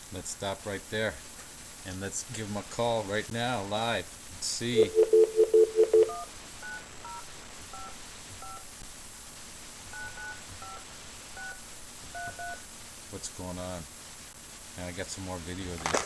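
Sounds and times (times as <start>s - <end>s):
pulsed dial tone: 4.8s - 6.2s
keypad beeps: 4.8s - 7.2s.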